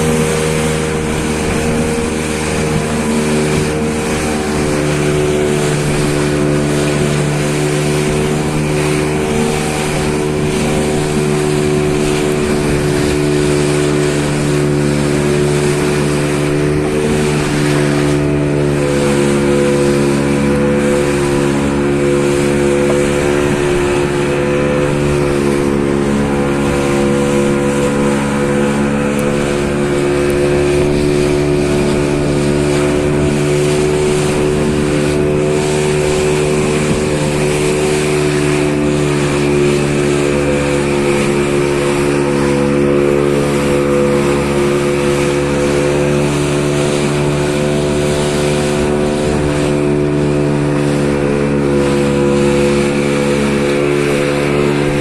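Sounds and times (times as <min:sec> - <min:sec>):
engine running steadily: 0:00.0 - 0:55.0.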